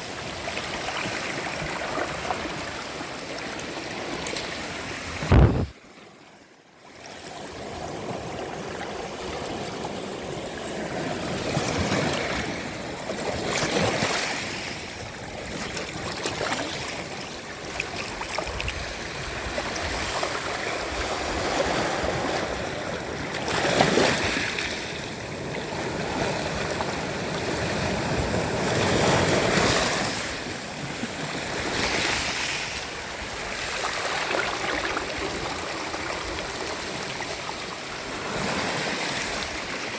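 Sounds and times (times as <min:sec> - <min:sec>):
sea waves on a sandy beach: 0:00.0 - 0:39.9
loud thump: 0:05.2 - 0:05.7.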